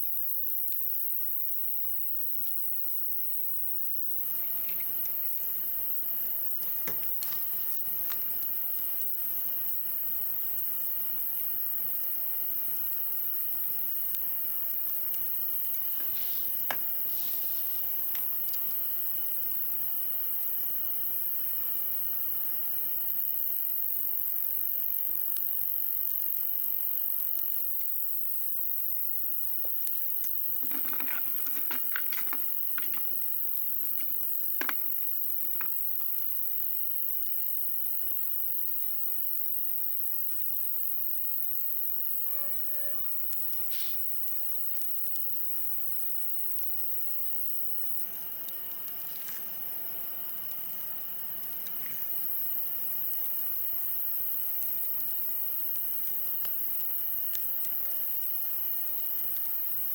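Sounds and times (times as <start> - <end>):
steady high hiss: 0.0 - 59.9
wood bonfire crackling: 13.6 - 17.1, 29.5 - 36.2, 48.3 - 52.2, 56.0 - 59.9.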